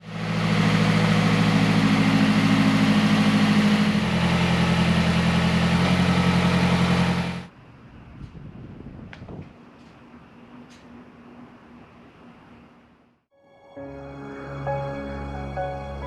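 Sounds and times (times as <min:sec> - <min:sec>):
car engine running: 0:00.0 - 0:08.4.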